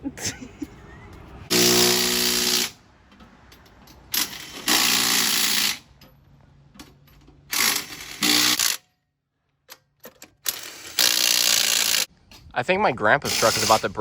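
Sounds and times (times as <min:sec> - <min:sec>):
power tool bursts: 0:01.5 - 0:02.8, 0:07.5 - 0:08.8, 0:10.5 - 0:12.1.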